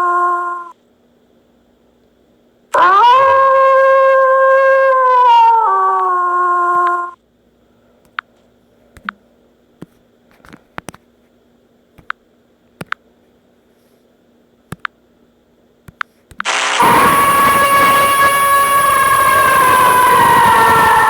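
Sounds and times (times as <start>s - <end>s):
faint steady hum: 0.0s - 21.0s
loud sound: 16.4s - 21.0s.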